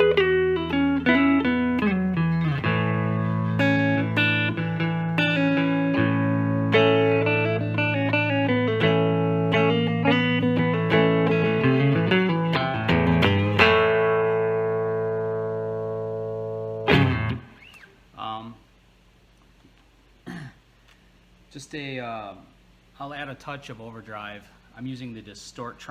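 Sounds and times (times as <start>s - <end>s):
clean electric guitar playing: 0.0s - 17.9s.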